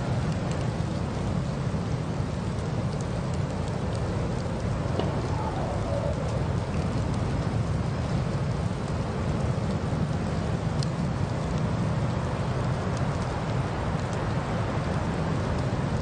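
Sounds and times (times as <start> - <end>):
blizzard wind: 0.0 - 16.0
faint ticks: 0.2 - 1.3, 8.8 - 15.7.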